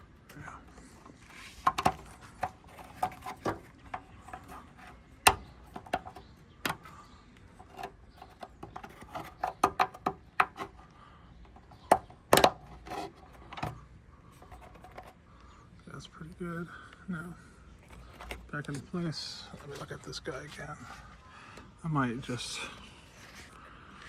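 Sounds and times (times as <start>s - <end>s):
hands handling parts clicking: 0.0s - 13.8s, 17.8s - 18.8s.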